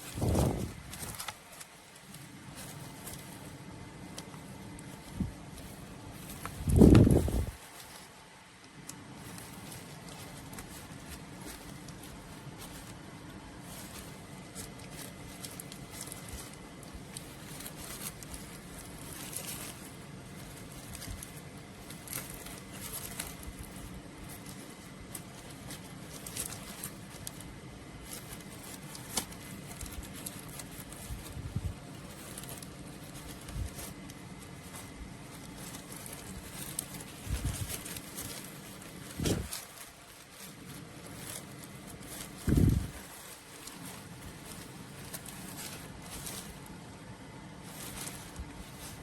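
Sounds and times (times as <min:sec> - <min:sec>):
steady hum: 0:00.0 - 0:49.0.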